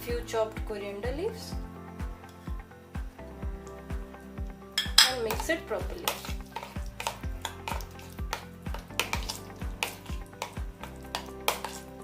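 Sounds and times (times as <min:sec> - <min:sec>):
background music with steady beat: 0:00.0 - 0:12.0
spoon clinking against bowl: 0:04.8 - 0:05.4.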